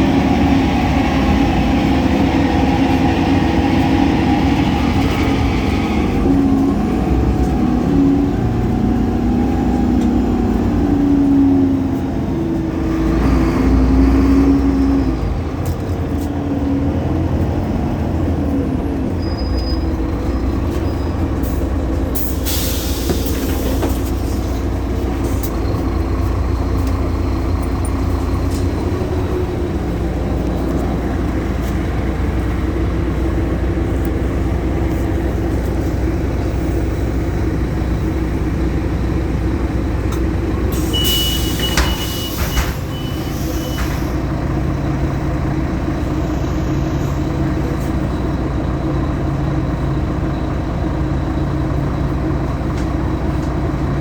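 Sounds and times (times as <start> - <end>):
bus diesel engine running: 0.0 - 54.0
air brake hiss: 22.2 - 24.6, 40.7 - 44.2.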